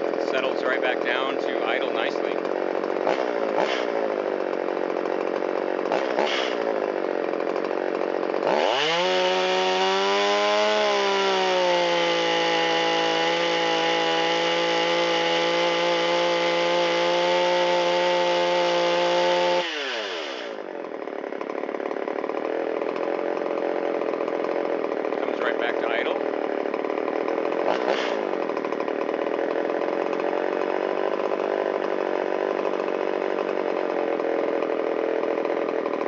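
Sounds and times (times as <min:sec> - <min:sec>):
chainsaw engine revving: 0:00.0 - 0:36.0.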